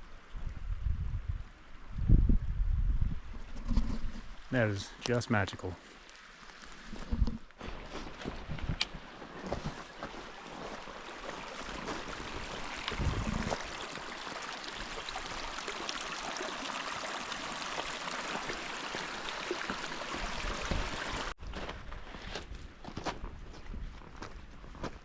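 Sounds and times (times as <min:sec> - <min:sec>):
creek water flowing over rocks: 0:07.6 - 0:21.4.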